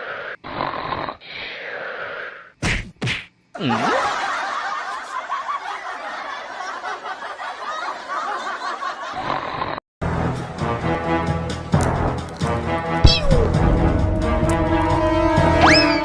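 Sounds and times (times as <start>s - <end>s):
people laughing: 3.6s - 9.3s.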